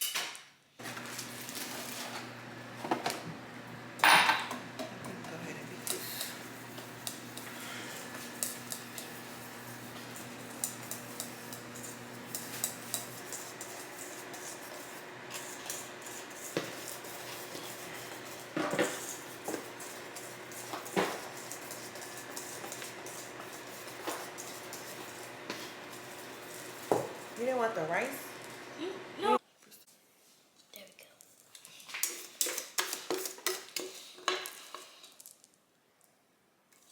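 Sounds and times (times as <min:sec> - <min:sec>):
utensil scraping a bowl: 0:04.0 - 0:28.7, 0:32.0 - 0:35.1.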